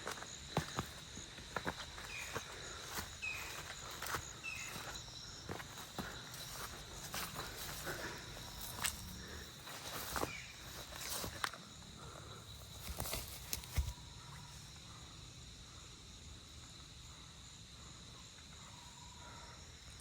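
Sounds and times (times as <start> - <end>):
high-pitched insect trill: 0.0 - 20.0
footsteps: 12.8 - 14.0.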